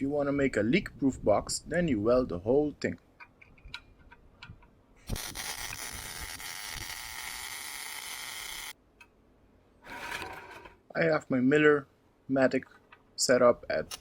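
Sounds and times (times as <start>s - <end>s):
welder hissing: 5.0s - 8.8s.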